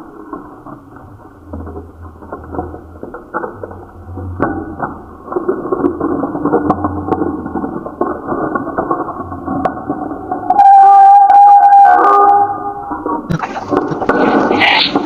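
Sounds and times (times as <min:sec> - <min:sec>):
creaking and grinding: 0:00.0 - 0:15.0.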